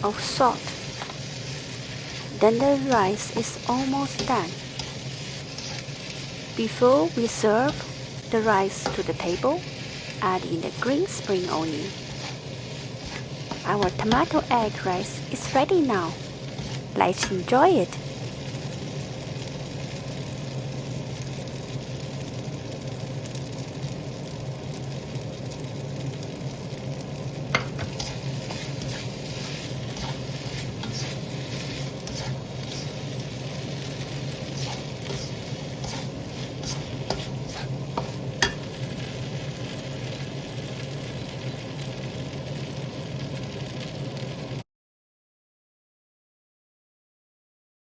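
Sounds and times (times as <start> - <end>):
rice sizzling in a pan: 0.0 - 44.6
spatula stirring and clicking: 0.2 - 18.1, 27.5 - 39.1.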